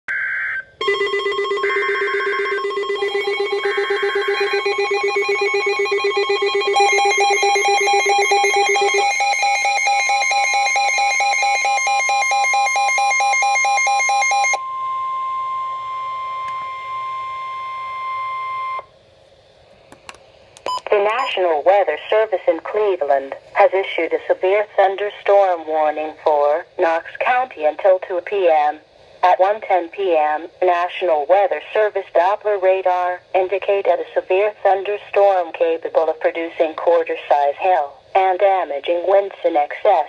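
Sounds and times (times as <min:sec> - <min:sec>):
fast-pulsing electronic alarm tones: 0:00.4 - 0:18.8
steady high warning tone: 0:00.4 - 0:18.9.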